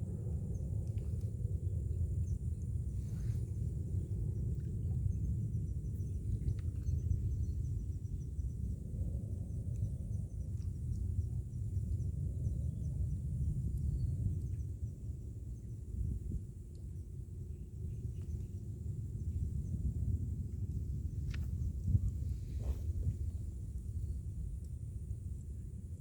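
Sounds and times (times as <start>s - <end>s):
steady low rumble: 0.0s - 26.0s.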